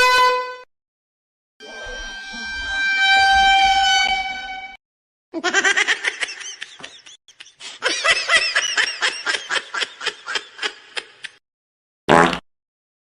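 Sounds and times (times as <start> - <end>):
high-pitched giggling: 5.4 - 11.4.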